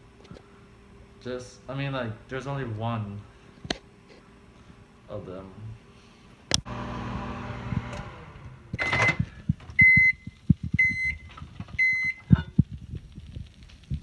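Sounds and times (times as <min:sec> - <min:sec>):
microwave humming: 0:00.0 - 0:14.0
microwave beeps: 0:08.7 - 0:12.6.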